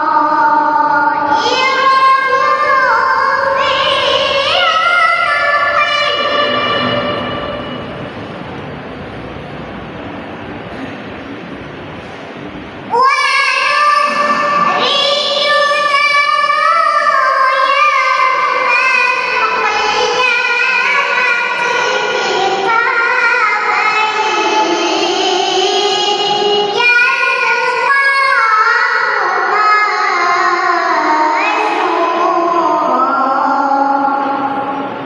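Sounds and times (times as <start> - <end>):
girl reciting melodically: 0.0 - 8.1, 12.9 - 35.0.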